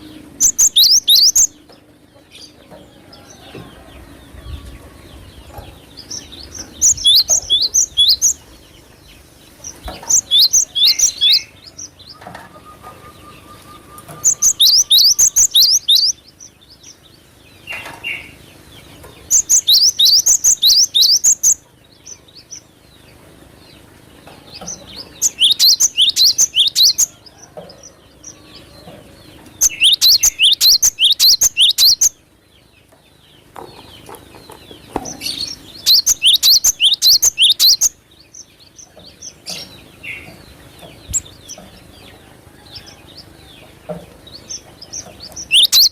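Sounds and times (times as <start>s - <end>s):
bird singing high sweeping notes: 0.0s - 3.1s, 3.9s - 17.2s, 24.8s - 27.2s, 28.2s - 32.2s, 35.1s - 38.4s, 45.4s - 45.9s.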